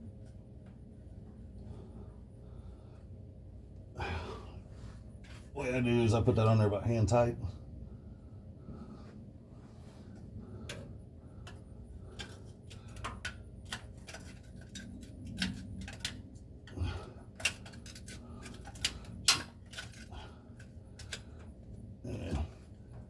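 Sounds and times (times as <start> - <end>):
metal clicks and clinks: 11.4 - 16.3, 17.3 - 21.4.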